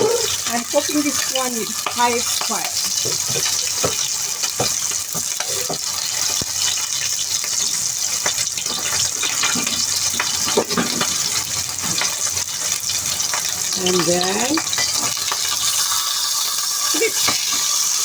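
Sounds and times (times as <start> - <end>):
pork chop sizzling in oil: 0.0 - 18.0.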